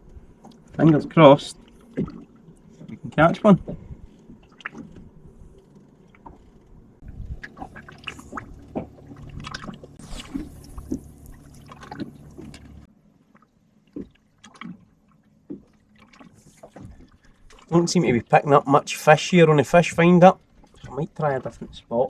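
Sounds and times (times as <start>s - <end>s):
steady low hum: 0.0s - 12.9s
water lapping against boat hull: 0.0s - 22.0s.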